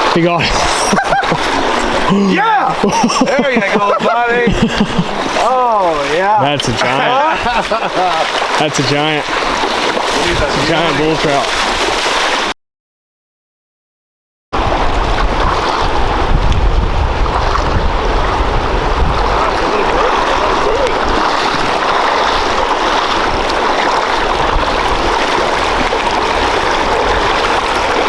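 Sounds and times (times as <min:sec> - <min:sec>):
rushing river water: 0:00.0 - 0:12.5, 0:14.6 - 0:28.0
wind buffeting microphone: 0:06.7 - 0:12.0, 0:14.6 - 0:28.0.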